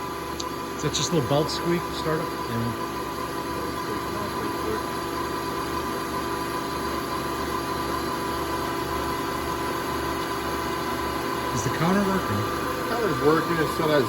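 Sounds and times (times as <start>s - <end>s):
bandsaw running: 11.0s - 14.0s.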